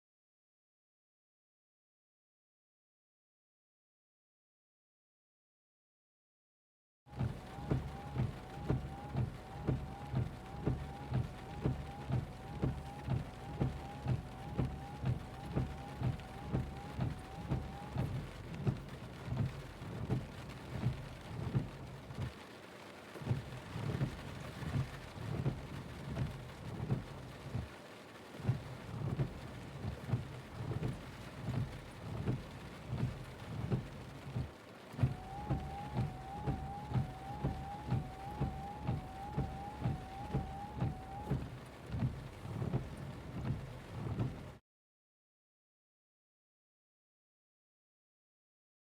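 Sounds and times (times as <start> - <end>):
rain pattering on car: 7.1 - 44.6
windshield wipers sweeping: 7.1 - 44.6.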